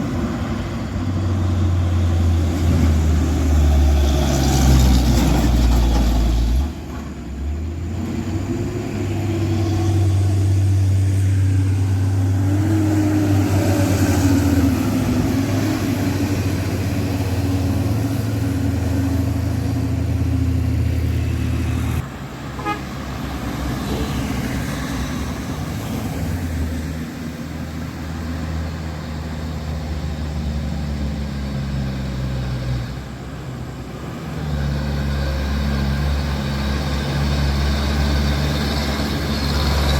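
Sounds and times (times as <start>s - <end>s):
diesel truck engines labouring: 0.0s - 39.9s
truck horn tooting: 22.5s - 23.0s.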